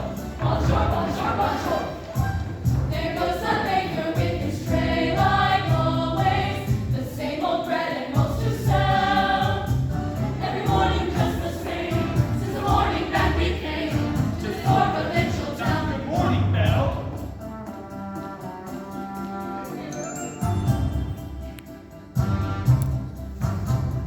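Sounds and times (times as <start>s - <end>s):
instrumental backing with bass: 0.0s - 7.2s, 8.2s - 24.0s
choir singing in harmony: 0.0s - 16.9s.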